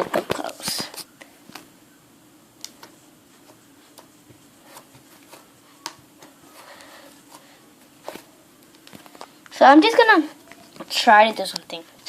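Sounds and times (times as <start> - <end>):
soft rubbing: 2.9 - 8.4.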